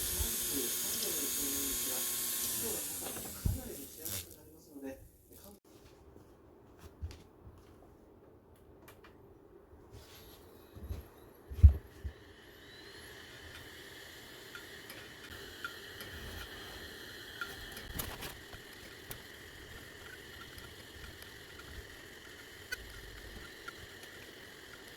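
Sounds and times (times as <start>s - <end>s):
hard disk drive whining: 0.0s - 4.2s, 11.8s - 24.9s
hard disk seek clicks: 17.3s - 24.9s.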